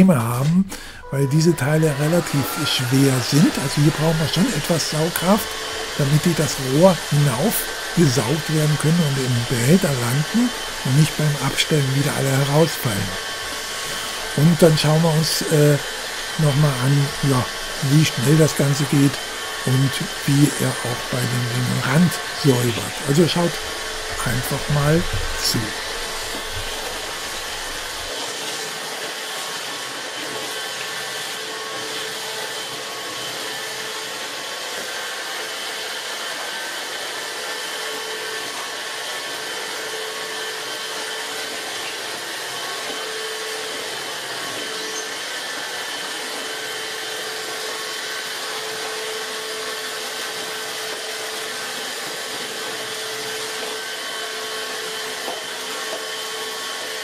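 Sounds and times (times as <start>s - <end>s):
vacuum cleaner running: 0.0s - 57.0s.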